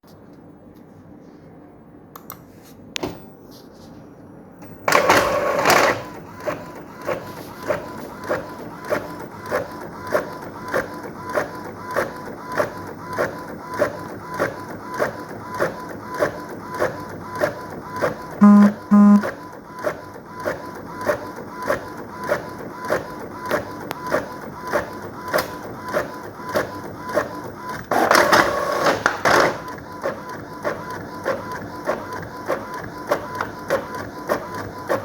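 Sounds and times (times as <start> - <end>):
printer clicking: 4.6 - 35.0
printer humming: 4.6 - 35.0
printer paper feed whirring: 4.6 - 35.0
buzzy beep: 18.4 - 19.2.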